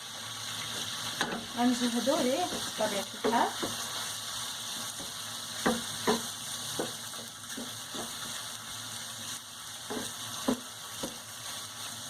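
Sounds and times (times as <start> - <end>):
shrimp sizzling in oil: 0.0 - 12.0
utensil scraping a pan: 0.5 - 8.4.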